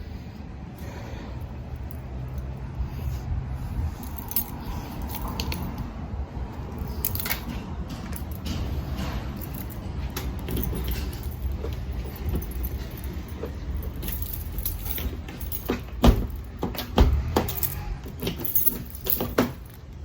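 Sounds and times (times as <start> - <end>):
steady low rumble: 0.0 - 20.0
small clicks and rattles: 6.7 - 20.0.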